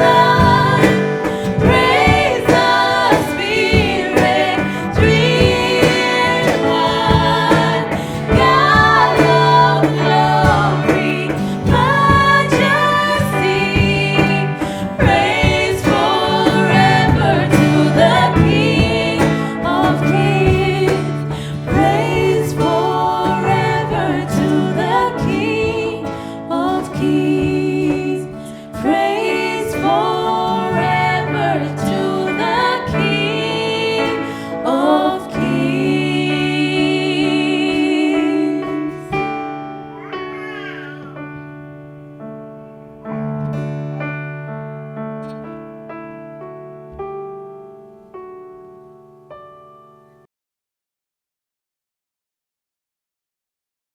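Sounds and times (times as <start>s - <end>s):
drum hits: 0.0s - 26.0s
sustained instrumental backing: 0.0s - 40.0s
people singing: 0.0s - 40.6s
worship song played by band: 0.0s - 41.5s.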